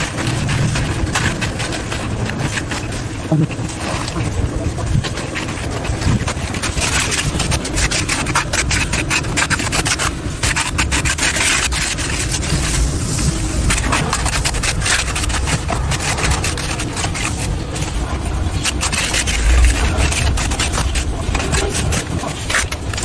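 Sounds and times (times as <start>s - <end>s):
hand tool scraping concrete: 5.1s - 23.0s.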